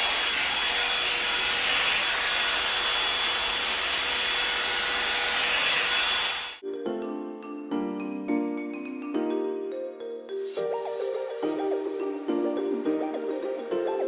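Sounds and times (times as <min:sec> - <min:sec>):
hot air brush dryer running: 0:00.0 - 0:06.6
background music with mallet notes: 0:06.6 - 0:14.0.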